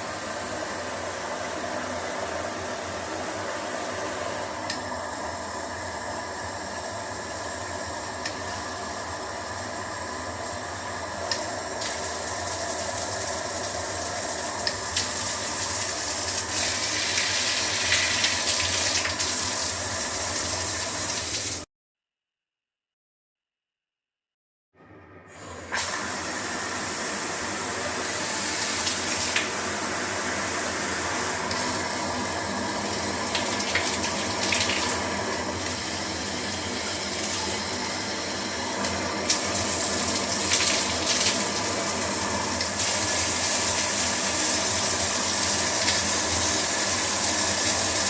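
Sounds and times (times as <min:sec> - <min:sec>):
shower water spraying: 0:11.3 - 0:21.7, 0:25.8 - 0:48.0.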